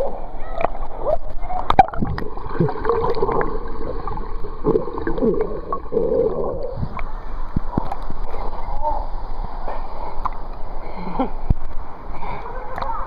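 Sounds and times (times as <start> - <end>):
water splashing and gurgling: 0.5 - 9.1.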